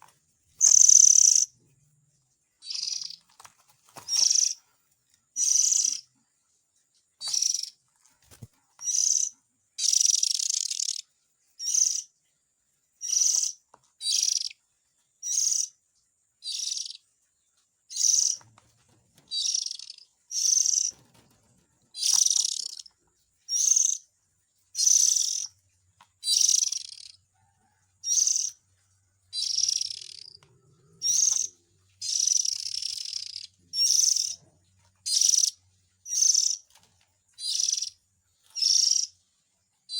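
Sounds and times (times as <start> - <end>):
bird harsh hissing calls: 5.4 - 6.0, 11.6 - 12.1, 13.0 - 14.6, 16.4 - 17.0, 24.8 - 25.5, 26.2 - 27.2, 29.4 - 34.4, 37.4 - 38.0, 38.6 - 39.1.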